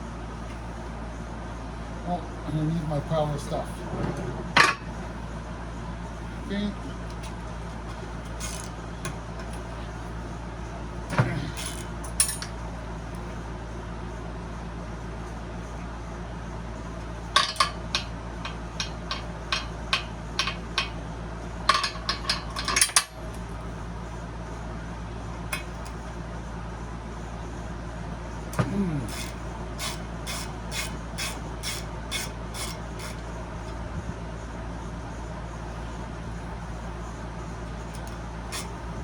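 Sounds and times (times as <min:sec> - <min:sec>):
metal parts clattering: 0:11.5 - 0:12.5.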